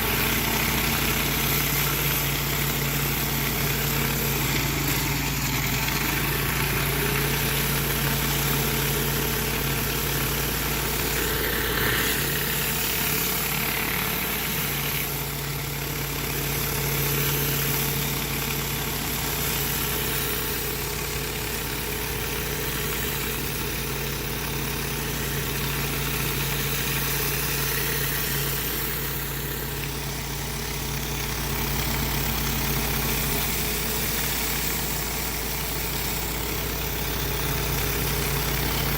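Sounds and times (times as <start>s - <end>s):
high-pressure water spray hiss: 0.0s - 38.9s
pressure washer engine running: 0.0s - 38.9s.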